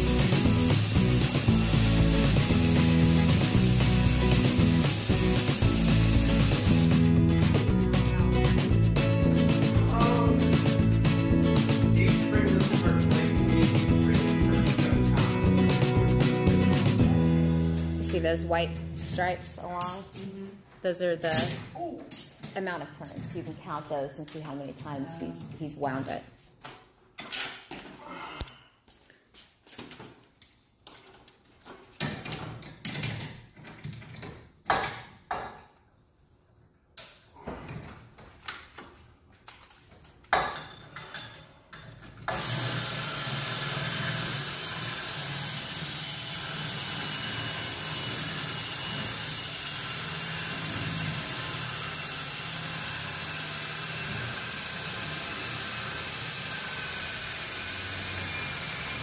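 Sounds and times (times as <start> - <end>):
power drill whining: 0.0 - 8.0, 42.3 - 59.0
knocks and clicks of tool handling: 29.7 - 35.8, 40.0 - 42.4.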